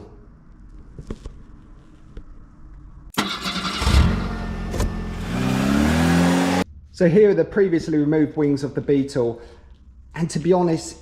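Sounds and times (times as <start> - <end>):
car engine starting and running: 3.1 - 6.7.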